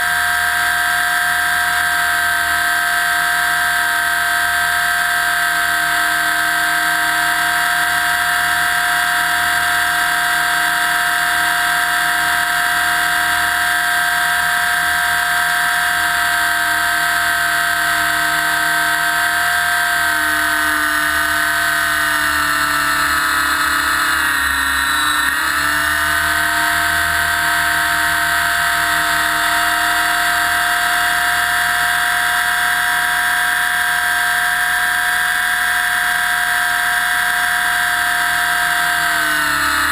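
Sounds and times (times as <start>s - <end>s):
electric motor high whine: 0.0s - 39.9s
helicopter rotor noise: 0.0s - 39.9s.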